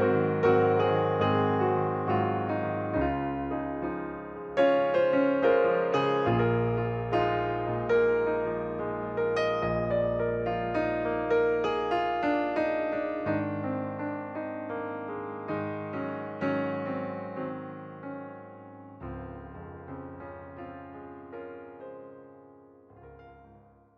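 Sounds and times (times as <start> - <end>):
gentle piano melody: 0.0 - 23.9.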